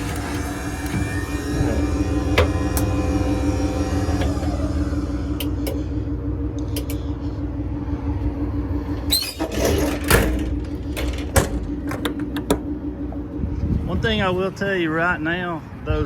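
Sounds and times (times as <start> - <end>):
crane whine: 0.0 - 16.0
truck engine running: 0.0 - 16.0
sharp knocks and clanks: 9.4 - 13.2.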